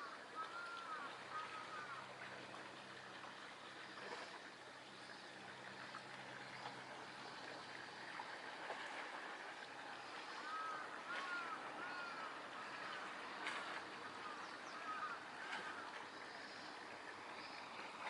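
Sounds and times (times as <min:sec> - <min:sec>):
bird calling: 0:00.0 - 0:02.0, 0:10.0 - 0:13.0, 0:14.2 - 0:16.8
small waves lapping: 0:00.0 - 0:18.0.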